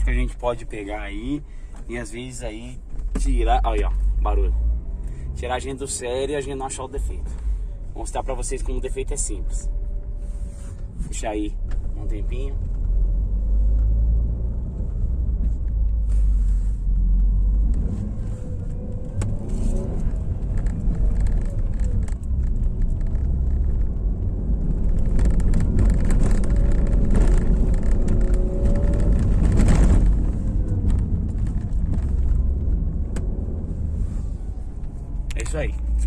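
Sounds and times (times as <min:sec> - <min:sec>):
car engine: 0:00.0 - 0:36.0
road and tyre rumble: 0:00.0 - 0:36.0.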